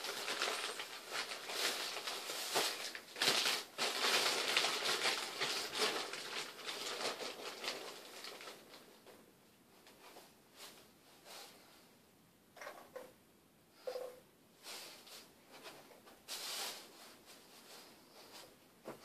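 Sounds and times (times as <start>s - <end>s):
plastic bag crinkling: 0.0s - 9.0s.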